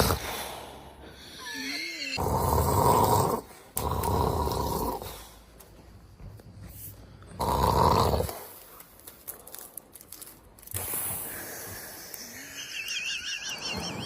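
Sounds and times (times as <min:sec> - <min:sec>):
person snoring: 0:07.4 - 0:08.3.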